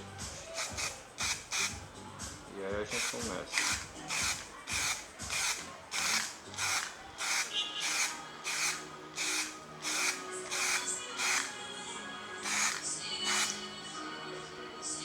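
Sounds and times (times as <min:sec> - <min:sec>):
spray paint can hissing bursts: 0:00.5 - 0:01.8, 0:03.0 - 0:11.6, 0:12.4 - 0:13.7.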